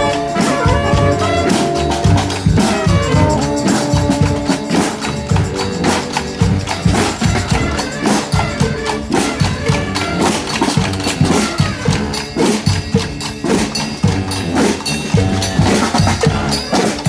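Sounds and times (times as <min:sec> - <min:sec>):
brass band playing: 0:00.0 - 0:17.0
drum and percussion beat: 0:00.0 - 0:17.0.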